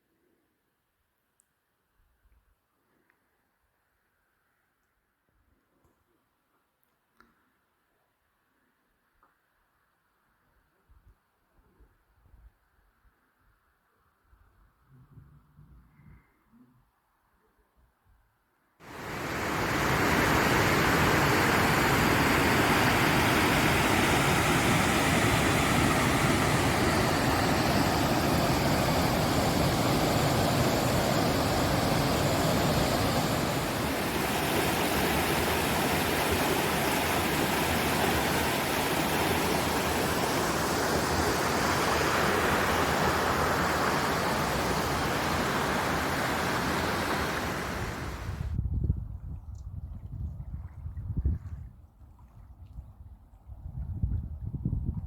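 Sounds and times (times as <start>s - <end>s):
fast-flowing water rushing: 18.9s - 48.4s.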